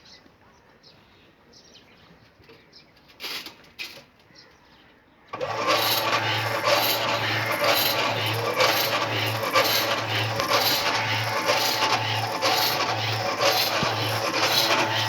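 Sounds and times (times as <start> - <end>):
machine running with low hum: 5.4 - 15.0.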